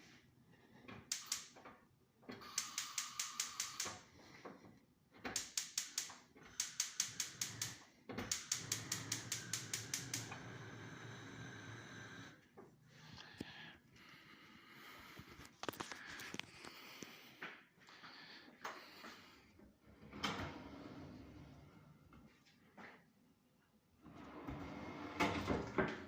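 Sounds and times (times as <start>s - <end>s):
rapid sharp mechanical clicks: 1.1s - 1.6s, 2.3s - 4.0s, 5.2s - 10.6s.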